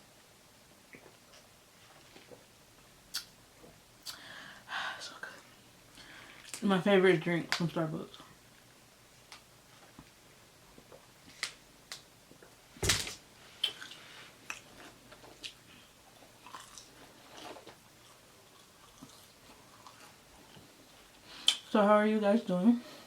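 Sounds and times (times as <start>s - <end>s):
person chewing sandwich: 13.6s - 21.6s.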